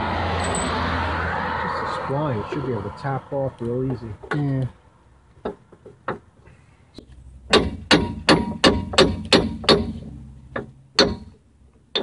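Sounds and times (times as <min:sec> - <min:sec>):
hammer striking steel: 0:07.5 - 0:10.0, 0:10.6 - 0:12.0.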